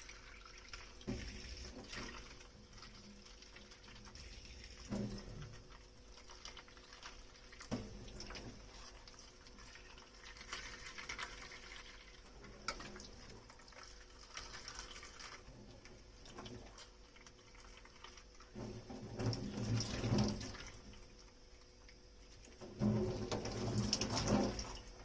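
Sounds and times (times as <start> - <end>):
water running: 0.0 - 25.0
dish scrubbing: 18.4 - 20.8, 22.6 - 24.9.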